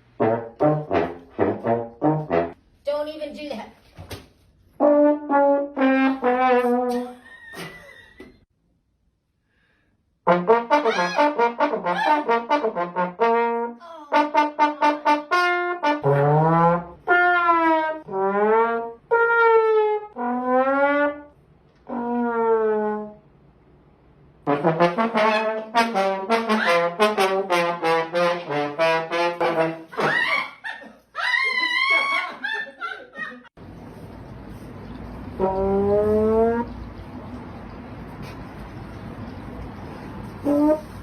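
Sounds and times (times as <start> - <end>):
trombone sliding notes: 0.2 - 2.6, 4.8 - 7.2, 10.3 - 23.3, 24.5 - 30.0, 35.3 - 36.8, 40.4 - 41.0.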